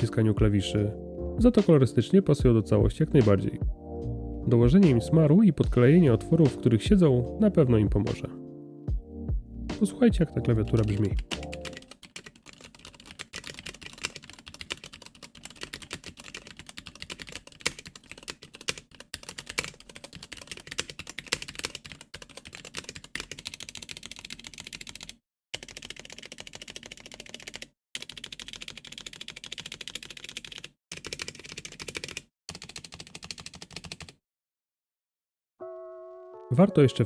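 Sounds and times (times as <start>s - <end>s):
mechanical keyboard typing: 10.2s - 34.2s.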